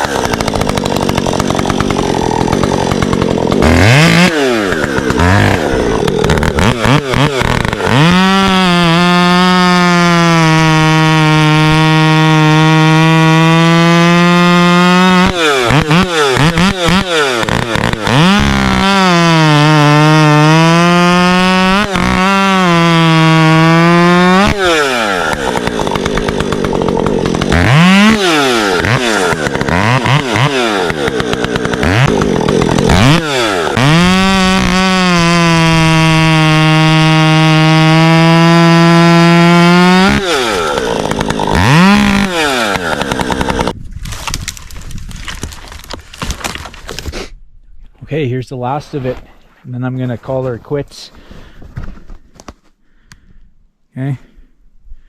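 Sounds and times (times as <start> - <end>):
chainsaw throttle blipping: 0.0 - 43.8
chainsaw cutting wood: 0.0 - 47.4.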